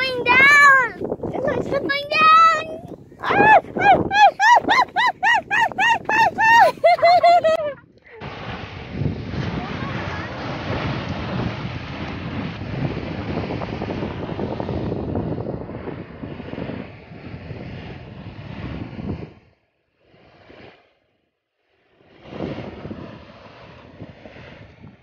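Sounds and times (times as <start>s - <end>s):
sea noise: 0.0s - 14.8s, 21.7s - 24.7s
wind buffeting microphone: 0.0s - 19.6s, 22.1s - 25.0s.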